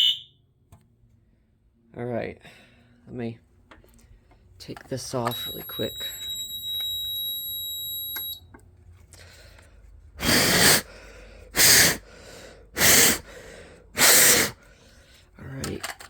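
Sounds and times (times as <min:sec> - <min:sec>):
high-pitched electronic tone: 0:00.0 - 0:00.3.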